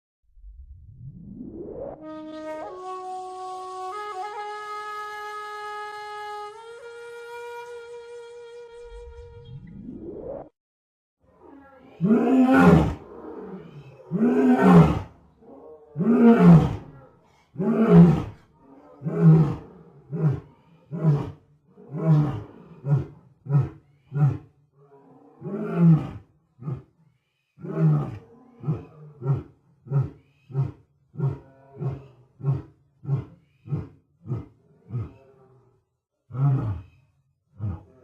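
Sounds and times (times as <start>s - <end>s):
lion roaring: 11.3s - 26.9s, 27.6s - 36.9s, 37.6s - 38.0s.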